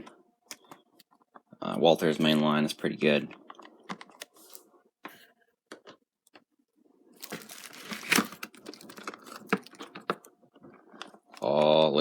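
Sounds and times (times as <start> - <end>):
packaging crinkling and rustling: 7.1 - 11.6
sharp clicks of packaging: 7.2 - 10.2.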